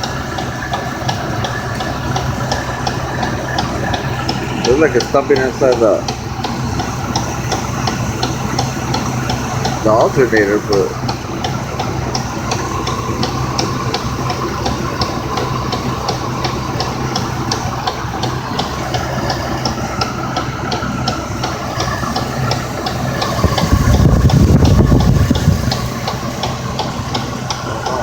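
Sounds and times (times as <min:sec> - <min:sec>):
sharp clicking from engine: 0:00.0 - 0:28.0
truck engine idling: 0:00.0 - 0:28.0
low rumble: 0:23.0 - 0:28.0.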